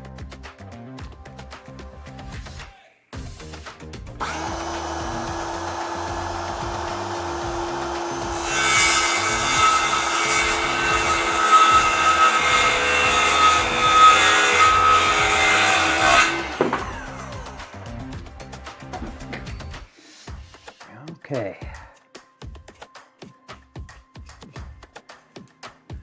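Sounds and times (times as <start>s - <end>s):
power saw cutting wood: 4.2s - 19.9s.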